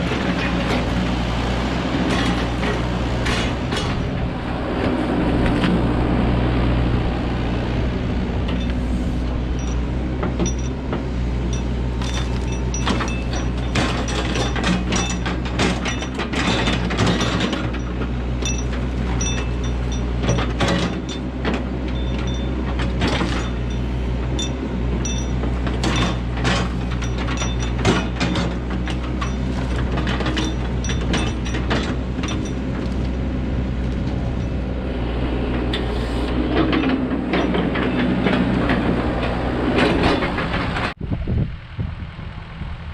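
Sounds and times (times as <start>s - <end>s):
excavator diesel engine running: 0.0s - 42.9s
wood clanking and cracking: 10.3s - 33.1s.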